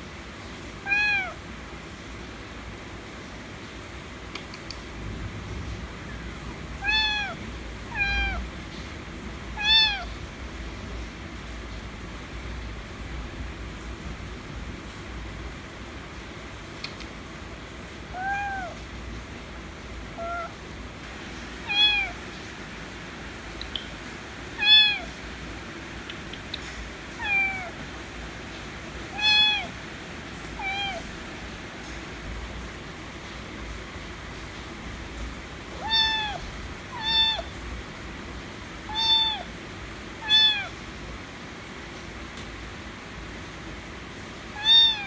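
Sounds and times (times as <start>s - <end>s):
kitten meowing: 0.8s - 1.4s, 6.8s - 8.5s, 9.6s - 10.2s, 18.1s - 18.8s, 20.1s - 20.6s, 21.6s - 22.4s, 23.6s - 25.2s, 26.1s - 27.8s, 29.1s - 29.8s, 30.6s - 31.1s, 35.7s - 37.6s, 38.9s - 39.5s, 40.2s - 40.8s, 44.6s - 45.0s.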